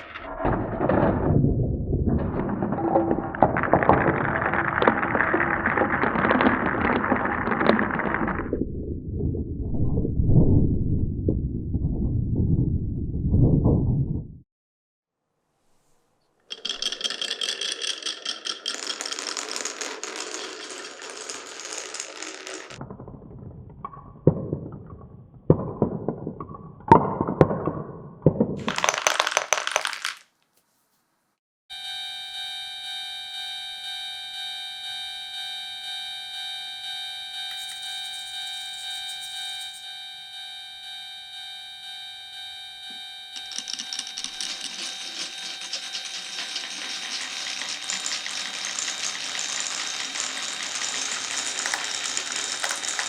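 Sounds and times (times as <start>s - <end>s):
marbles rolling on wooden track: 2.1s - 8.6s, 16.5s - 22.9s, 28.6s - 30.3s, 43.4s - 53.0s
marbles knocking through blocks: 2.1s - 8.7s, 16.5s - 23.0s, 23.7s - 30.3s, 43.4s - 53.0s
toy crossing signal chime: 42.8s - 53.0s.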